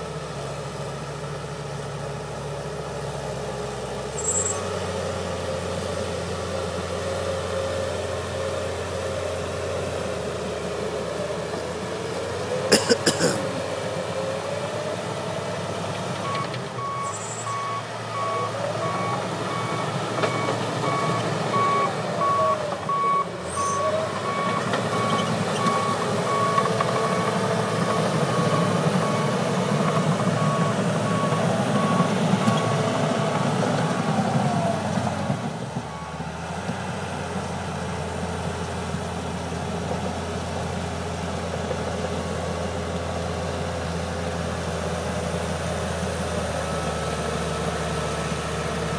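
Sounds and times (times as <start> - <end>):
bulldozer diesel engine: 0.0 - 48.9
backup alarm beeping: 16.3 - 27.3.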